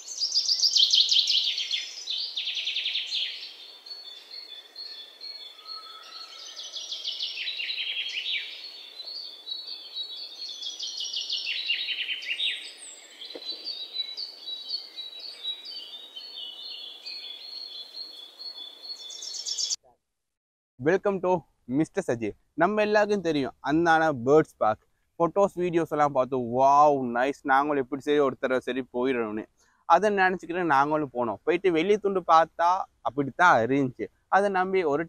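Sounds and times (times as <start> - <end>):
small birds chirping: 0.0 - 19.8.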